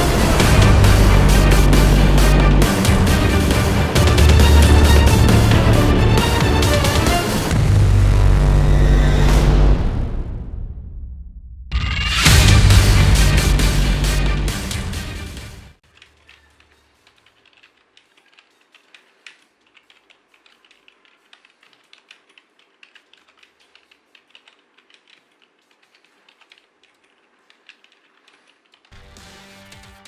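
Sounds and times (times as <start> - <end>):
music: 0.0 - 10.5, 12.0 - 15.8, 28.9 - 30.0
mechanical keyboard typing: 15.8 - 29.0.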